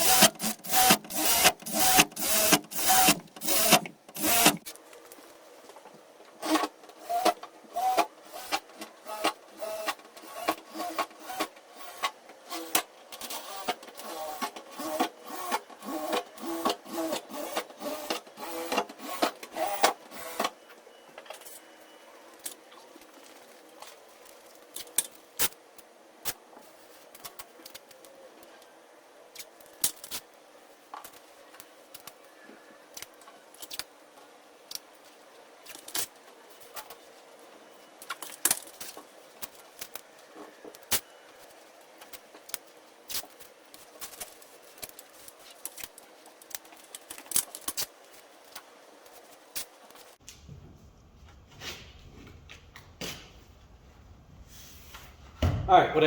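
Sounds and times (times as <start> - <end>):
drill boring through sheet metal: 0.0 - 4.6.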